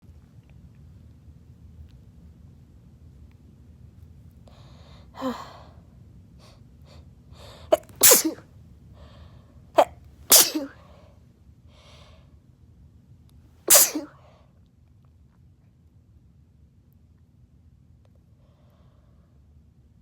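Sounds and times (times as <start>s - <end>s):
person sneezing: 7.5s - 8.4s, 9.8s - 10.9s, 13.7s - 14.2s
breathy inhales: 11.7s - 12.3s.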